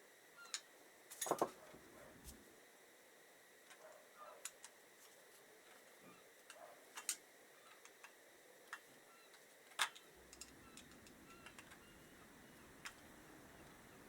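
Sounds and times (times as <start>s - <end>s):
metal parts clicking and tapping: 1.2s - 1.5s.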